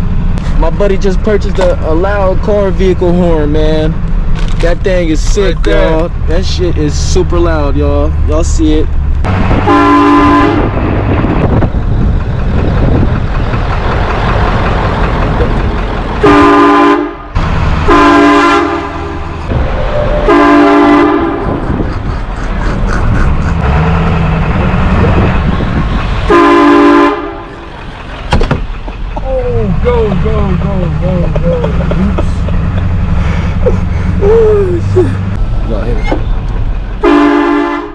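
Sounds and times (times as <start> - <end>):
vehicle low rumble: 0.0 - 37.9
train horn blasting: 9.6 - 10.8, 16.2 - 21.6, 26.3 - 27.5, 37.0 - 37.9.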